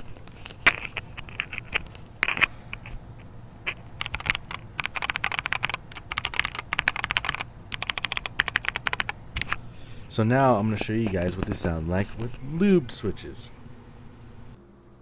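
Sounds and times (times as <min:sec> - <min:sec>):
mechanical keyboard typing: 0:03.7 - 0:09.6.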